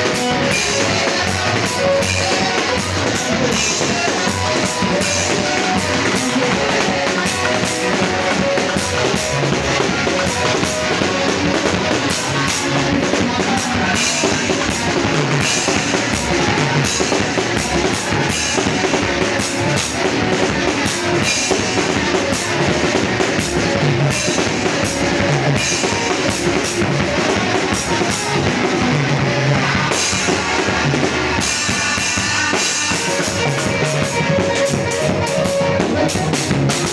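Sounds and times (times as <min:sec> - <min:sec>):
band playing upbeat music: 0:00.0 - 0:36.9
drum kit beat: 0:00.0 - 0:36.9
guitar: 0:00.0 - 0:36.9.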